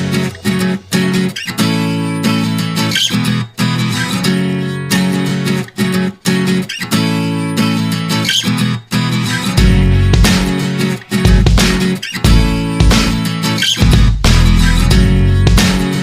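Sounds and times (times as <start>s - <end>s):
strummed acoustic guitar: 0.0s - 16.0s
deep bass: 9.6s - 10.5s, 12.3s - 13.2s, 13.8s - 15.8s.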